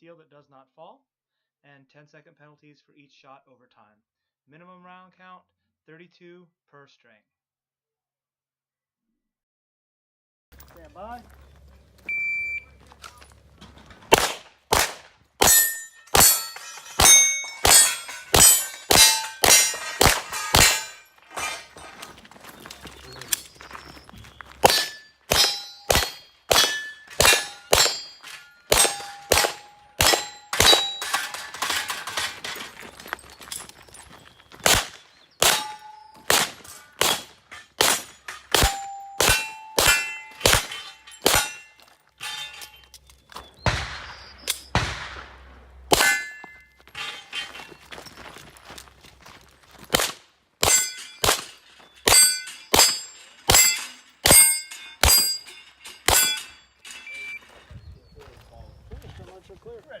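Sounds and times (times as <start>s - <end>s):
rapid pistol fire: 14.1s - 15.1s, 36.3s - 37.2s, 43.7s - 46.0s
steel targets ringing: 14.1s - 48.2s, 49.9s - 57.7s.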